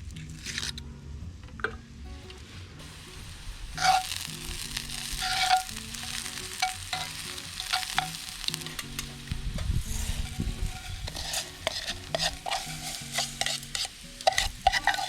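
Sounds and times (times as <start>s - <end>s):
food sizzling in a skillet: 2.8s - 15.0s
utensil scraping a pan: 3.8s - 15.0s.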